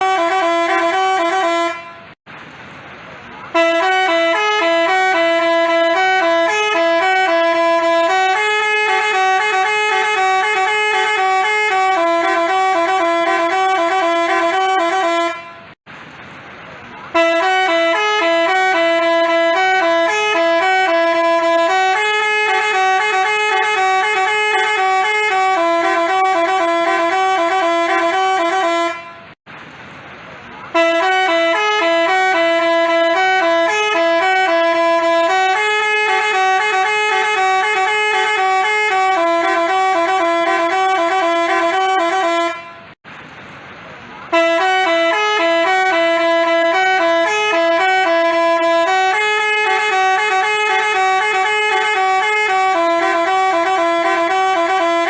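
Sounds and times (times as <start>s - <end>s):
multi-tone musical horn jingle: 0.0s - 2.2s, 3.5s - 15.8s, 17.2s - 29.4s, 30.8s - 43.0s, 44.3s - 55.0s.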